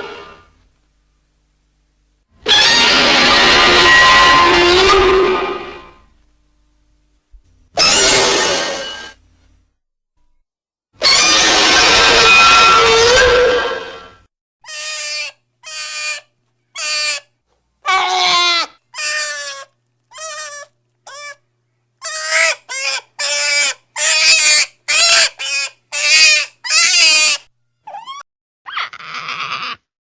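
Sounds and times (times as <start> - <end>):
short animal-like cries: 14.7 - 17.2, 17.9 - 21.4, 22.0 - 28.2.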